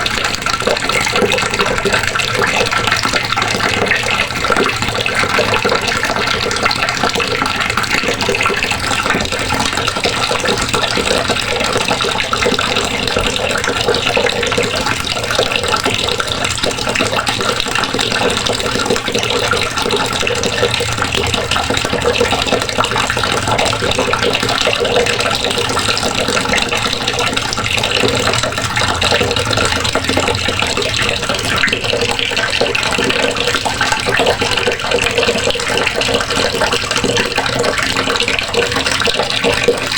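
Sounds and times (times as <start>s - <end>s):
faucet water splashing into basin: 0.0s - 39.9s.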